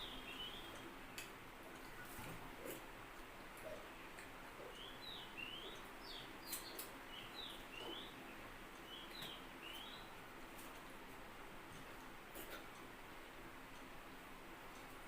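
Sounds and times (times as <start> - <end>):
bird chirping: 0.0 - 0.8, 4.6 - 10.2.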